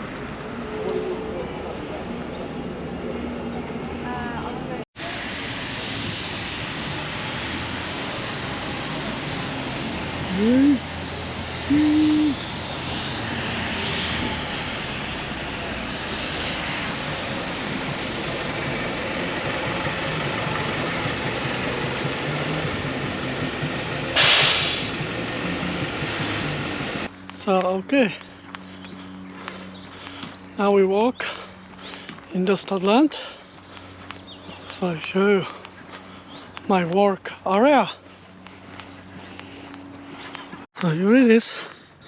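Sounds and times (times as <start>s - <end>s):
passing vehicles traffic: 0.0s - 42.0s
loud short hiss: 24.2s - 25.0s.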